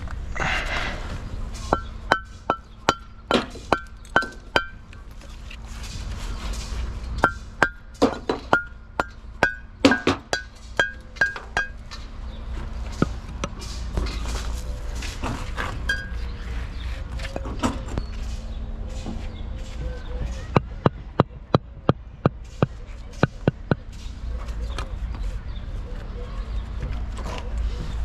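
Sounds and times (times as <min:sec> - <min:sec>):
hammer striking metal: 0:01.6 - 0:04.8, 0:07.2 - 0:12.0.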